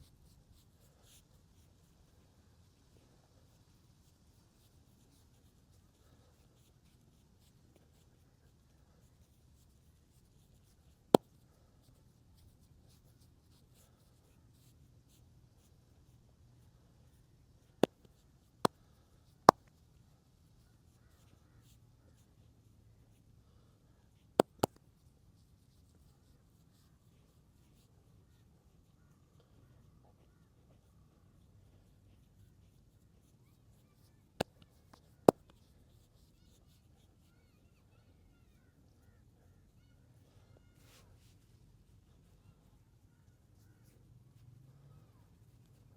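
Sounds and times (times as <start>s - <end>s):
hands rubbing over skin: 24.4s - 24.9s.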